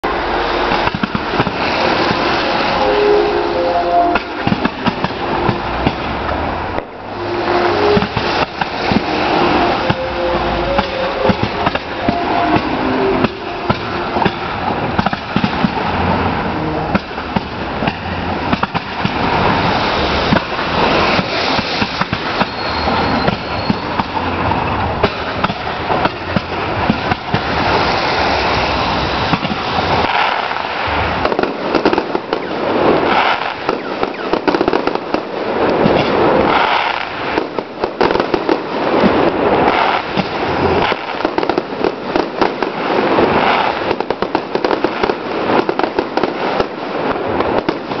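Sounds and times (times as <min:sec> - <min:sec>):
fireworks bangs and crackle: 0:16.9 - 0:24.2, 0:29.2 - 0:48.0.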